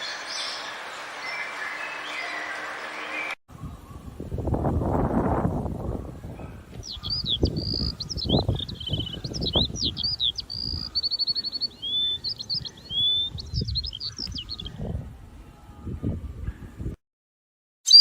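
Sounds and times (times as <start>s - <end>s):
small bird singing: 0.0s - 4.1s, 6.4s - 14.9s.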